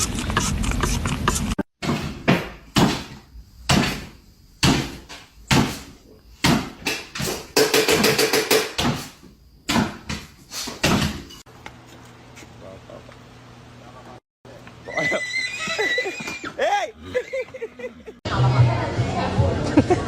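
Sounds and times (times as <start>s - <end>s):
sharp knocks: 1.8s - 11.3s.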